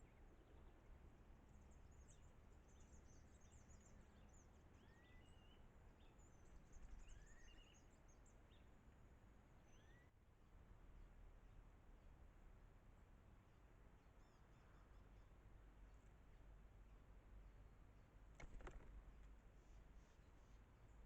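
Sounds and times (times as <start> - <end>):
small birds chirping: 0.0 - 10.1
low background hiss: 0.0 - 21.0
rising whistled bird call: 9.7 - 10.1.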